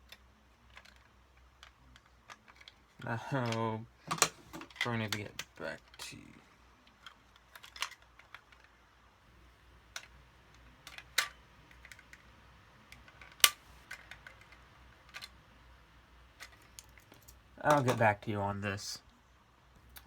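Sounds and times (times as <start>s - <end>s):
small plastic parts clicking: 0.0s - 6.1s, 6.8s - 8.8s, 9.9s - 15.4s.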